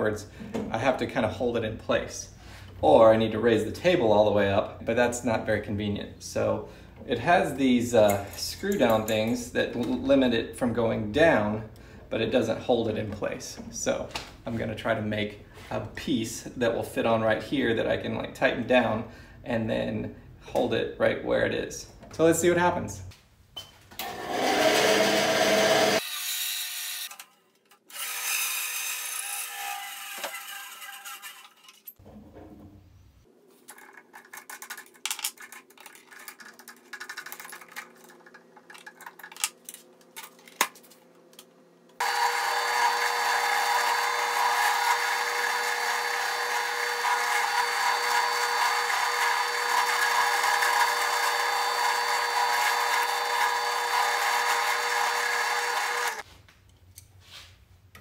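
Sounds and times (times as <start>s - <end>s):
drill press motor whine: 24.0s - 26.0s, 42.0s - 56.2s
end mill cutting plastic: 24.0s - 32.0s, 42.0s - 56.2s.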